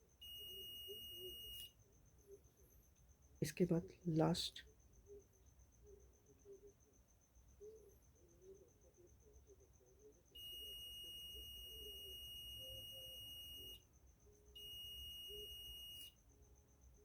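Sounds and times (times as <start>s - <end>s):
multimeter buzzer beeping: 0.2s - 1.7s, 10.4s - 13.8s, 14.6s - 16.2s.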